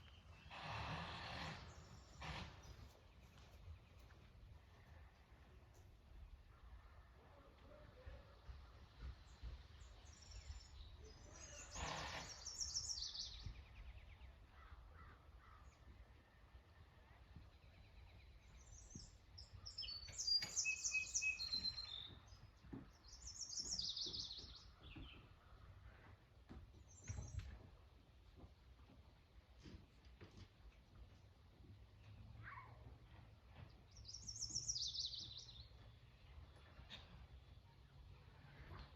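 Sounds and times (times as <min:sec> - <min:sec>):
songbirds singing: 0:00.0 - 0:07.1, 0:09.0 - 0:16.6, 0:17.2 - 0:28.2, 0:33.5 - 0:38.9.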